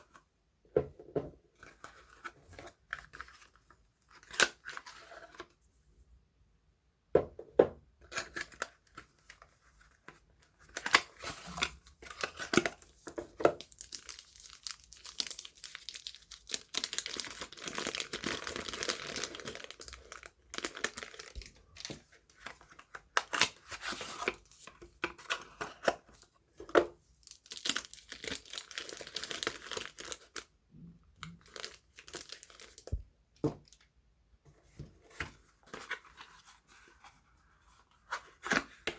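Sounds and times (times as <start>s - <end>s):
packaging crinkling and tearing: 13.5s - 24.7s, 27.2s - 30.5s, 31.4s - 32.9s.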